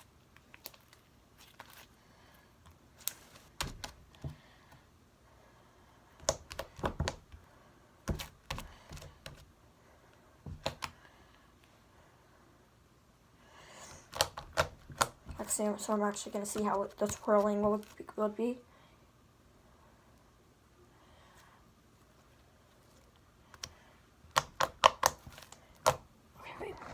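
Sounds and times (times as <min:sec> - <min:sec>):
slime clicking and popping: 0:24.3 - 0:26.0.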